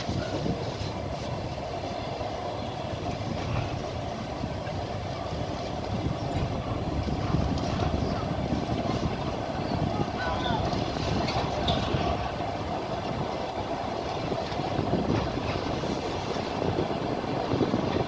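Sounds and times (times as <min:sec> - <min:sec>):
train wheels rumbling on rails: 0:00.0 - 0:18.0.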